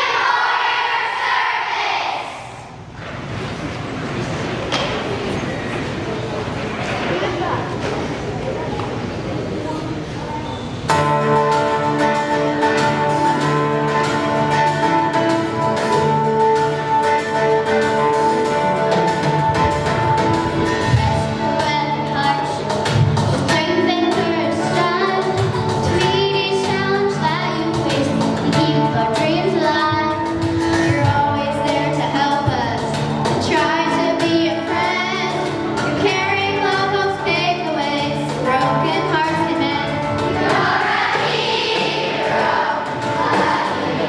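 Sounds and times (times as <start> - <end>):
children's choir singing: 0.0 - 2.9, 33.4 - 44.0
instrumental accompaniment: 10.7 - 44.0.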